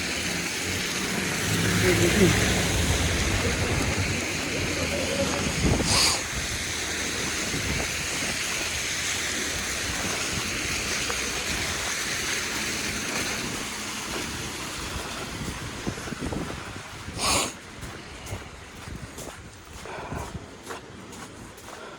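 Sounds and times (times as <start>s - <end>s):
low engine rumble: 0.0s - 21.9s
tyre and road noise: 0.0s - 21.9s.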